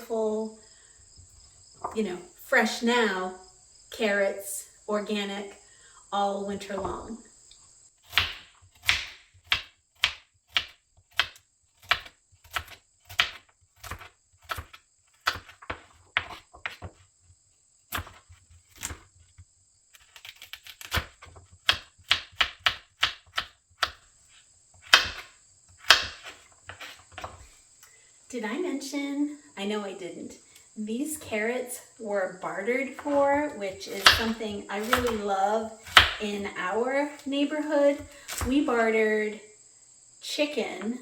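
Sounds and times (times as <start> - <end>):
knife chopping carrots on board: 8.1 - 17.0, 20.7 - 24.0, 24.8 - 27.4, 33.9 - 36.2.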